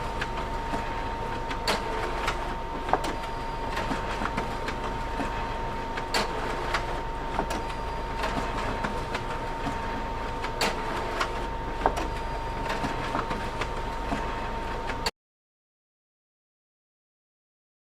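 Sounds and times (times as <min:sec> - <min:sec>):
photocopier whirring: 0:00.0 - 0:15.1.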